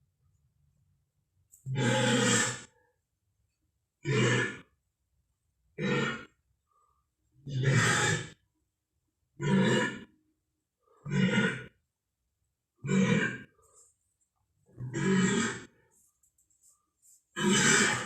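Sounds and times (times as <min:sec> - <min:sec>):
low dinosaur calls: 0:01.7 - 0:02.7, 0:07.4 - 0:08.4, 0:17.4 - 0:18.0.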